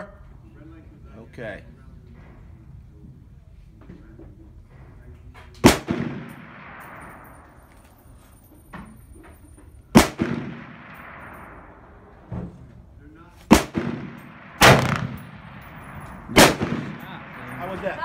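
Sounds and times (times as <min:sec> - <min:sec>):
rifle shots with echo: 0:05.6 - 0:08.2, 0:09.9 - 0:12.3, 0:13.4 - 0:18.0.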